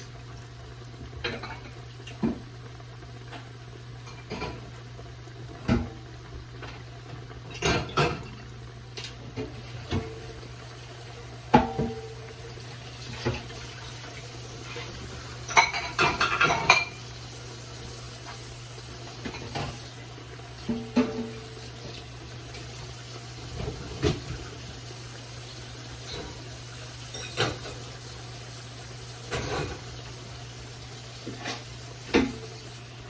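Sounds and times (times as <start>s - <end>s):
pots and dishes clinking: 1.0s - 2.4s, 3.2s - 4.8s, 6.6s - 10.5s, 11.5s - 12.4s, 13.0s - 17.2s, 19.1s - 20.0s, 20.6s - 22.8s, 25.9s - 28.0s, 29.2s - 30.0s, 31.1s - 32.8s.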